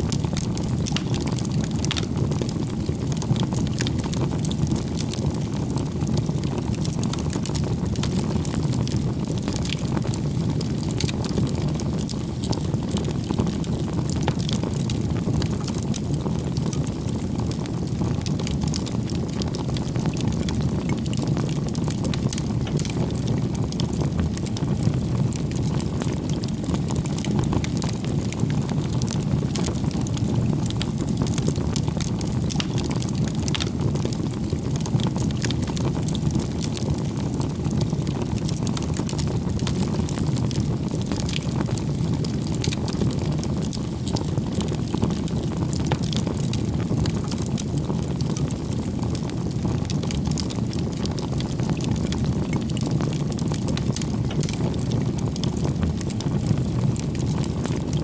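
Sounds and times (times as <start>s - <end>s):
fire crackles and pops: 0.0s - 58.0s
flames rushing: 0.0s - 58.0s.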